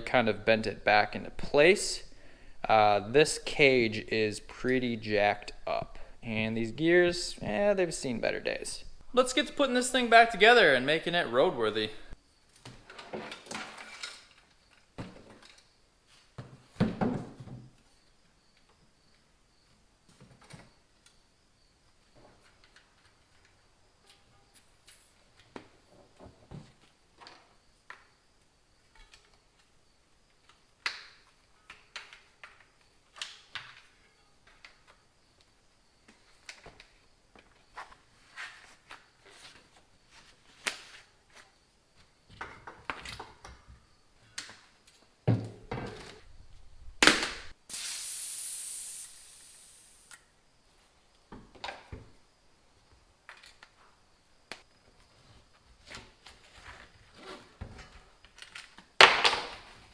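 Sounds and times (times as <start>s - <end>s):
steady hiss: 0.0s - 12.2s, 47.2s - 50.2s
tools and parts clicking and clunking: 12.6s - 15.7s.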